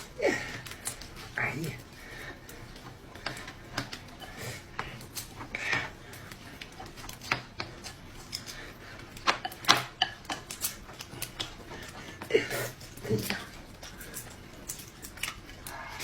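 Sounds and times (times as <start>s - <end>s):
chopsticks clicking against bowl: 6.6s - 12.0s.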